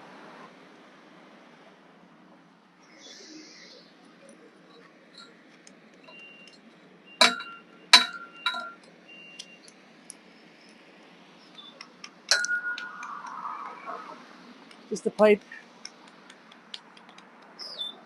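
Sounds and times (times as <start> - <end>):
metal clinking against metal: 7.2 - 8.9, 12.3 - 13.1.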